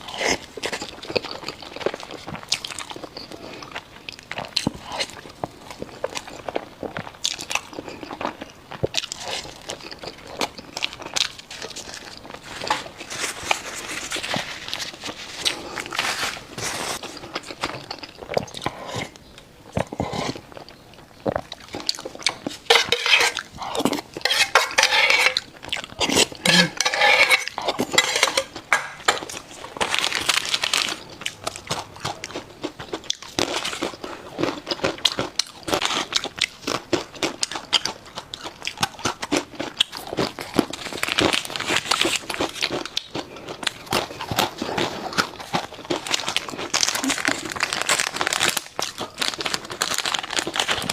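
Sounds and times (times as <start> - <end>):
crunching and chewing: 0.0 - 50.9
cutlery clinking against dishes: 22.7 - 23.4, 24.2 - 25.4, 26.5 - 29.4.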